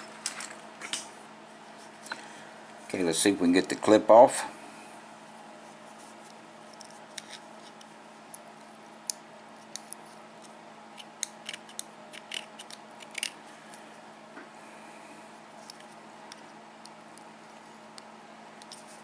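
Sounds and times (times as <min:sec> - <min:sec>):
small metal clicks and scrapes: 0:09.8 - 0:13.4.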